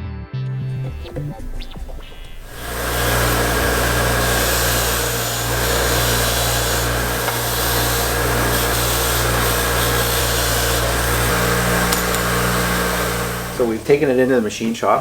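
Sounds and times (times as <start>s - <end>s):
motor-driven machine humming and grinding: 2.1s - 15.0s.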